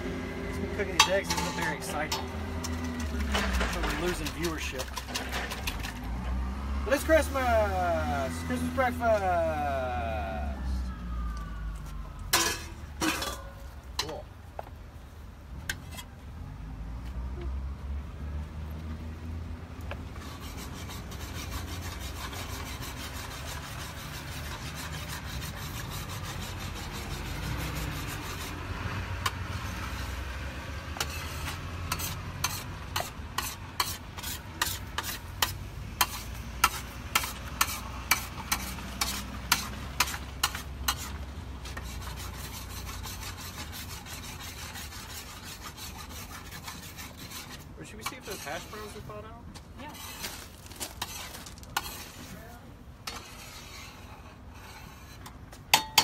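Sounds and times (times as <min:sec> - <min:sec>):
spatula scraping eggs in pan: 0:00.8 - 0:06.2, 0:20.2 - 0:30.4, 0:31.0 - 0:49.2, 0:49.8 - 0:52.4, 0:53.0 - 0:55.4.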